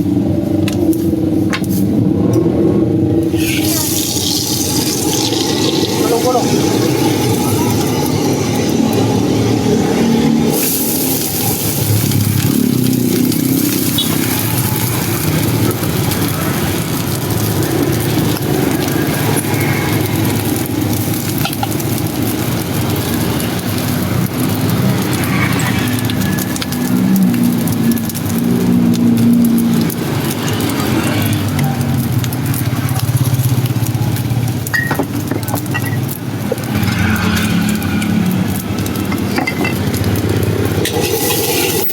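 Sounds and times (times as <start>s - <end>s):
food sizzling in hot oil: 0.0s - 41.9s.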